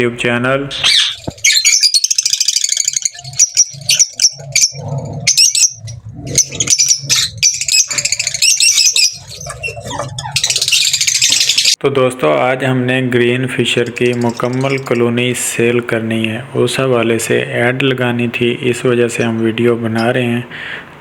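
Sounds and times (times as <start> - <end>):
lovebirds chattering: 0.6 - 11.8, 13.2 - 17.4, 18.6 - 20.4
wings flapping: 2.2 - 11.8, 13.7 - 15.1.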